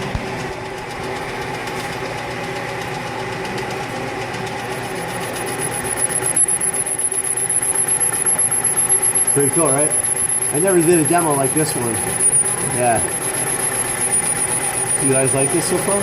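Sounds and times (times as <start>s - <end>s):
metal lathe humming: 0.0s - 16.0s
thin high whine: 4.9s - 16.0s.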